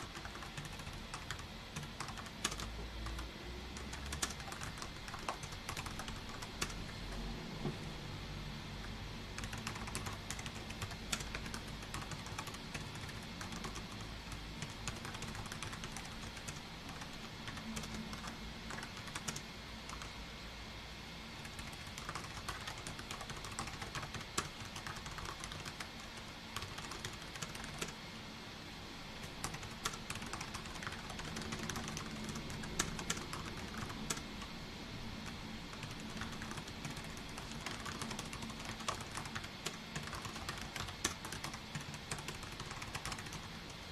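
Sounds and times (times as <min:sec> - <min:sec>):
computer keyboard typing: 0:00.0 - 0:07.2, 0:08.8 - 0:20.1, 0:21.4 - 0:28.0, 0:29.2 - 0:34.4, 0:35.2 - 0:43.8.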